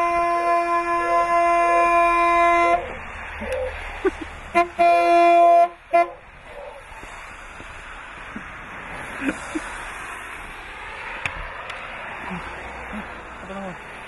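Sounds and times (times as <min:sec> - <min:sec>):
truck horn honking: 0:00.0 - 0:03.6, 0:04.4 - 0:06.4
dog barking: 0:00.9 - 0:02.0, 0:06.5 - 0:06.8.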